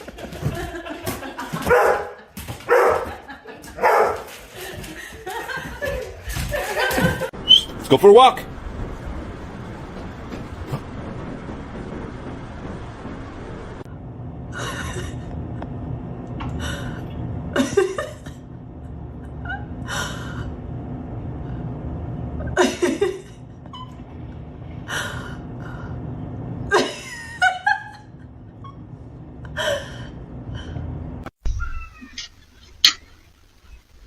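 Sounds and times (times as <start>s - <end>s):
steady low hum: 6.5s - 31.3s.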